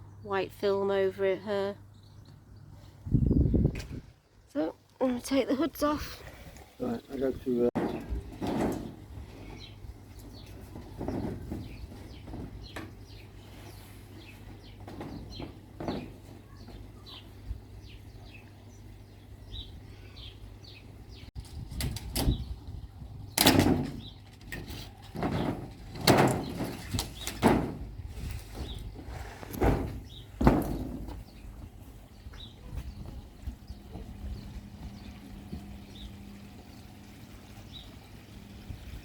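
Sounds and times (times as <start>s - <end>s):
pond covers knocking and scraping: 7.7s - 17.2s, 23.4s - 31.8s.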